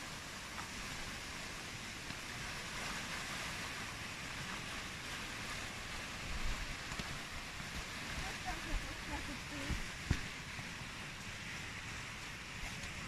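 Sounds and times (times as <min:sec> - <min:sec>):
lake waves washing on shore: 0:00.0 - 0:13.0
wind buffeting microphone: 0:07.7 - 0:10.4.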